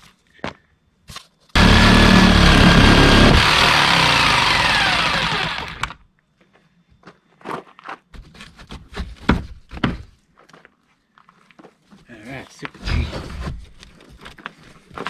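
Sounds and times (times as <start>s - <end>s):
power tool motor running: 1.6s - 5.9s.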